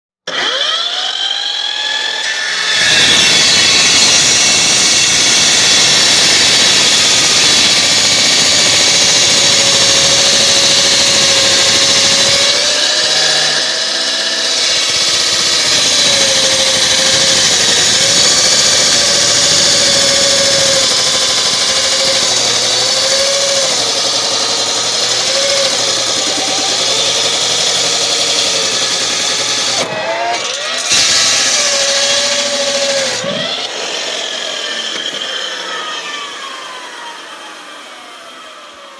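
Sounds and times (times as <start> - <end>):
chop saw cutting cable: 0.2 - 38.6.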